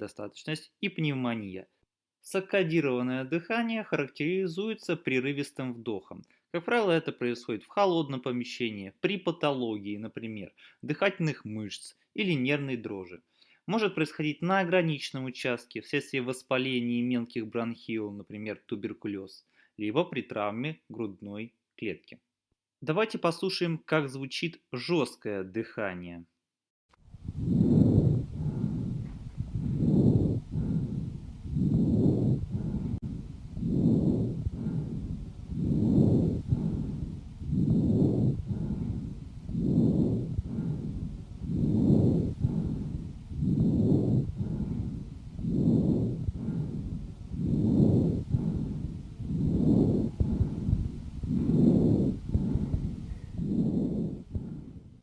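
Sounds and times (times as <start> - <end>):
harsh breathing through stethoscope: 27.2 - 55.0.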